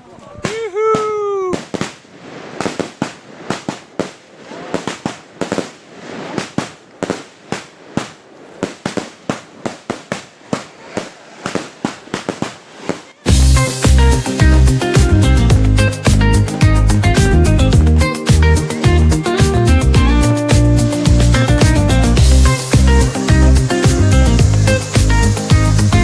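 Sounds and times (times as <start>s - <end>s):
fireworks bangs: 0.0s - 26.0s
fireworks crackling: 0.0s - 26.0s
loud dance music: 13.3s - 26.0s.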